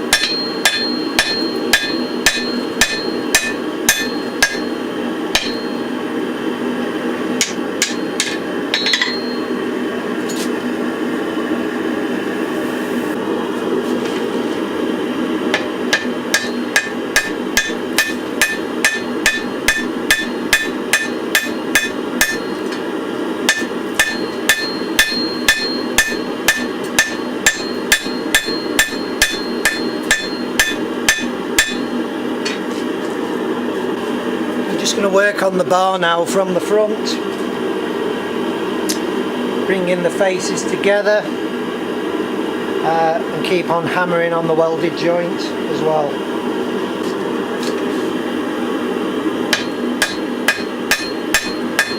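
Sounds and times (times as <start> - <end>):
hammer striking hot iron: 0.0 - 6.0, 7.4 - 9.6, 15.5 - 32.7, 49.5 - 51.9.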